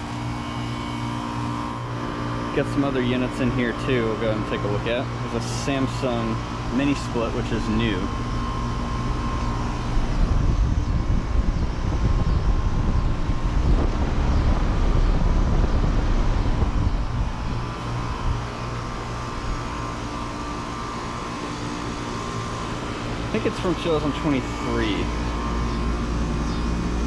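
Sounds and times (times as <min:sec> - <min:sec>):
compressor hum: 0:00.0 - 0:27.0
fans rushing air: 0:00.0 - 0:27.0
low rumble: 0:07.3 - 0:20.6.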